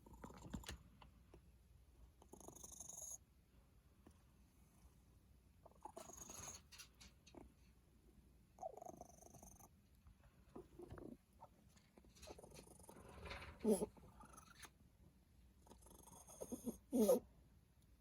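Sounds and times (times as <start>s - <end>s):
cat purring: 0.0s - 0.8s, 2.0s - 3.2s, 5.6s - 7.7s, 8.5s - 14.8s, 15.6s - 17.2s.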